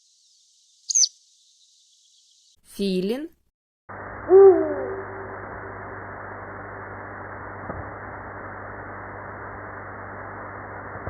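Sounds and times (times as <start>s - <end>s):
owl hooting: 0.9s - 1.1s, 4.3s - 5.3s.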